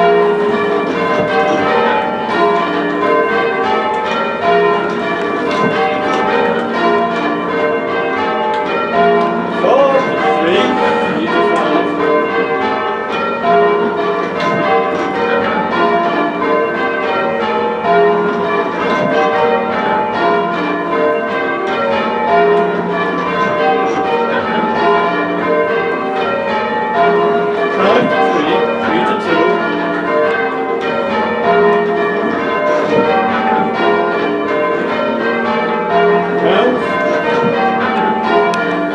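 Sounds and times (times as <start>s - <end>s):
heavy church bells ringing: 0.0s - 38.9s.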